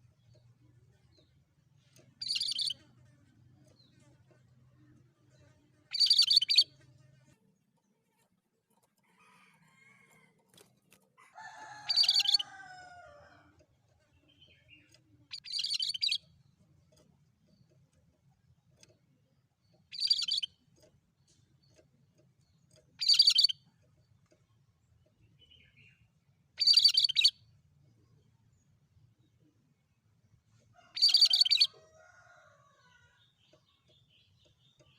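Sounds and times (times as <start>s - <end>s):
harsh high-pitched bird calls: 2.2s - 2.8s, 5.9s - 6.7s, 11.7s - 12.6s, 15.3s - 16.2s, 19.9s - 20.5s, 23.0s - 23.6s, 26.6s - 27.4s, 30.9s - 31.8s.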